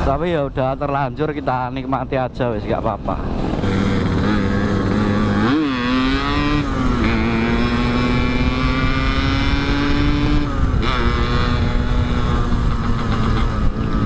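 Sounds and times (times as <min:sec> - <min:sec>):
two-stroke motorcycle engine revving: 0:02.8 - 0:14.0.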